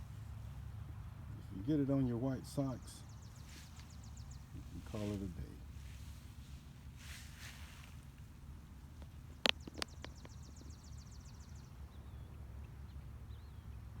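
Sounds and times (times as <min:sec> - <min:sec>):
steady low rumble: 0:00.0 - 0:11.6
sharp clicks: 0:09.0 - 0:10.4.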